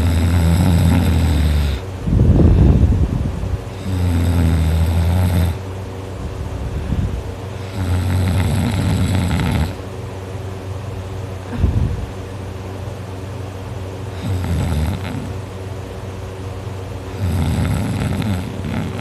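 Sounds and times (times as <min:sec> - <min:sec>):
person snoring loudly: 0:00.0 - 0:01.8, 0:03.7 - 0:05.6, 0:07.6 - 0:09.8, 0:14.1 - 0:15.4, 0:17.1 - 0:19.0.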